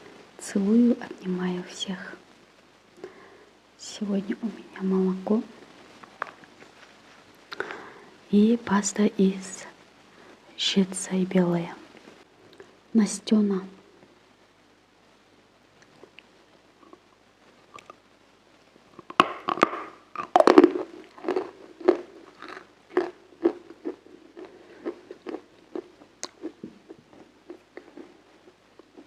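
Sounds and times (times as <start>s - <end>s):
crunchy chewing: 17.7s - 18.0s, 19.0s - 29.0s
crunching ice cream bites: 19.0s - 29.0s.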